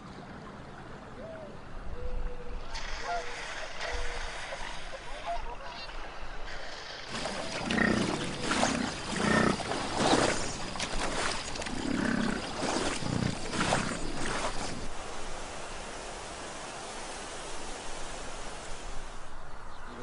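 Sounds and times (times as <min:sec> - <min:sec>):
bear growling and roaring: 0:07.1 - 0:10.4, 0:11.7 - 0:13.9
wolves growling: 0:07.1 - 0:10.4, 0:11.7 - 0:13.6.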